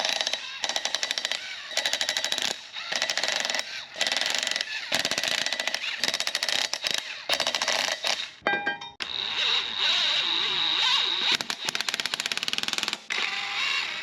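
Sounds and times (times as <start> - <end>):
impact wrench hammering: 0.0 - 9.1.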